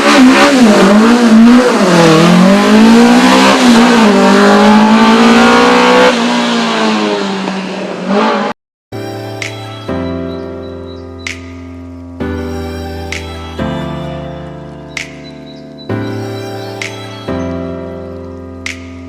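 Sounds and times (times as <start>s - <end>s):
rally car engine revving: 0.0s - 8.5s
music: 8.9s - 19.0s.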